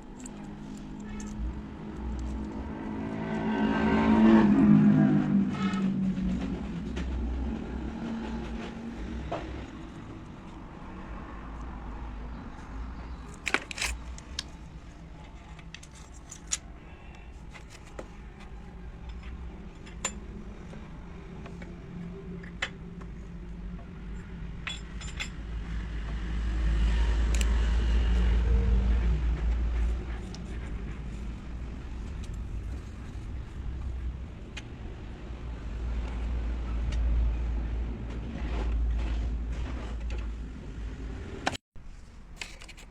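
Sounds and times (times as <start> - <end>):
steady low rumble: 27.3 - 39.6.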